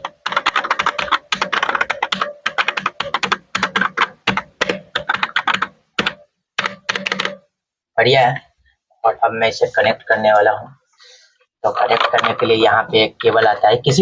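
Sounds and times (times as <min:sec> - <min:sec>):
mechanical keyboard typing: 0:00.0 - 0:07.4, 0:11.8 - 0:12.6.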